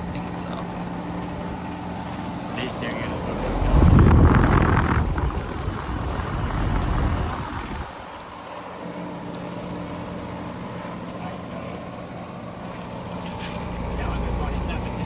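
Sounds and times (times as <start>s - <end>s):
air conditioning unit running: 0.0s - 15.0s
low electrical hum: 0.0s - 15.0s
wind buffeting microphone: 1.3s - 10.7s.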